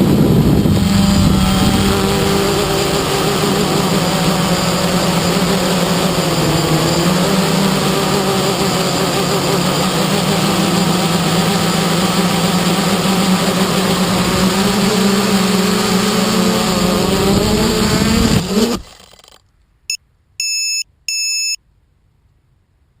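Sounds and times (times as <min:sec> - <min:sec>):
wind rushing over microphone: 0:00.0 - 0:07.7, 0:11.3 - 0:18.8
drone motors and propellers: 0:00.0 - 0:19.5
electronic beeps: 0:20.4 - 0:21.6.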